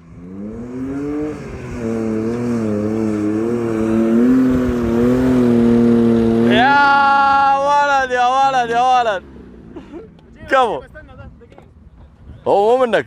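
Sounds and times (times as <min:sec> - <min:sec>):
engine revving hard: 0:00.0 - 0:07.6.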